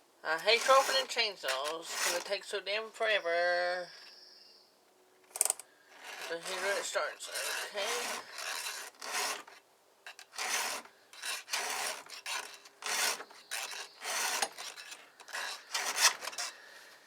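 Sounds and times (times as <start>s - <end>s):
hand file rasping on chain: 0.4s - 2.4s, 5.9s - 16.8s.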